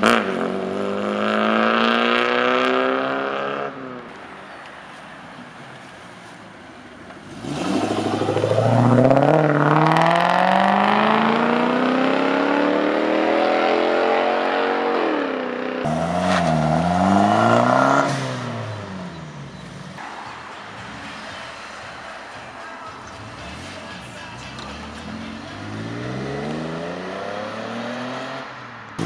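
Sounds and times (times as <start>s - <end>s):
car engine accelerating hard: 7.2s - 20.1s, 23.1s - 29.0s.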